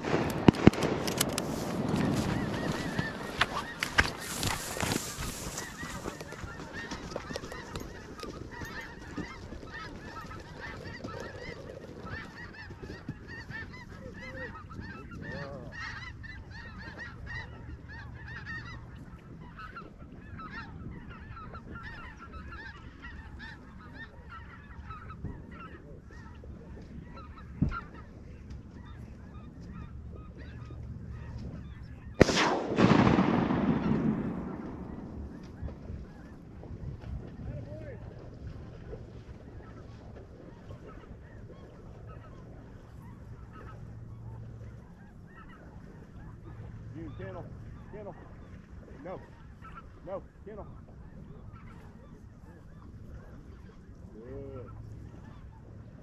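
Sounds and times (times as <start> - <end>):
shotgun shot: 0.0 - 1.9, 32.2 - 35.5
geese honking: 0.0 - 56.0.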